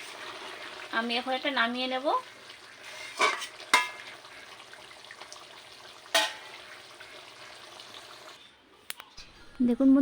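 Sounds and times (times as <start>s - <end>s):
metal cooking pot clanking: 3.0s - 4.1s, 6.1s - 6.6s.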